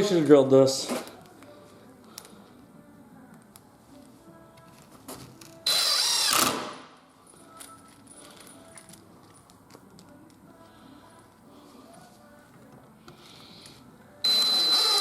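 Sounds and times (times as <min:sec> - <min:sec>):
cordless drill driving screw: 0:05.7 - 0:06.6, 0:14.3 - 0:15.0.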